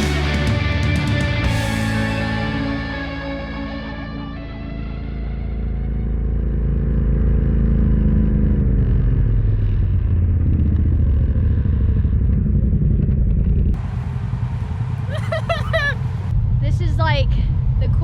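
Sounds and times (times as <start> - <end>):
held music chord: 0.0 - 6.5
vehicle engine droning: 0.0 - 18.0.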